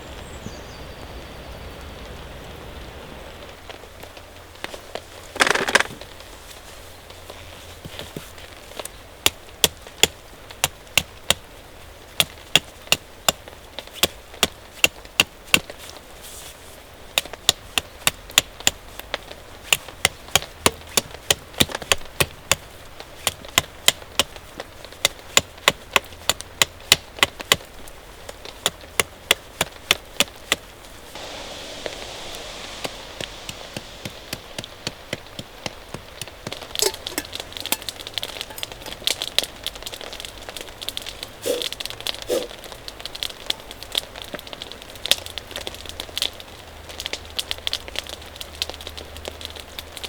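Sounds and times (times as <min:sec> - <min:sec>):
rain hissing: 0:00.0 - 0:09.2, 0:29.8 - 0:50.0.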